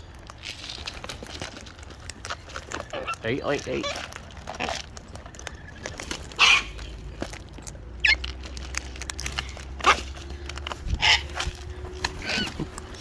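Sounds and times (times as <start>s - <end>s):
cockatoos squawking: 2.8s - 4.8s, 5.4s - 6.9s, 8.0s - 8.2s, 10.8s - 11.6s, 12.2s - 12.6s.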